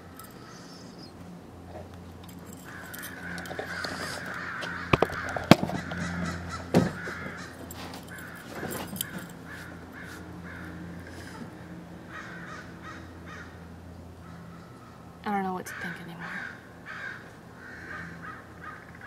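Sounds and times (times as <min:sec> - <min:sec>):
harsh raspy animal calls: 0:02.6 - 0:13.6, 0:15.7 - 0:19.0.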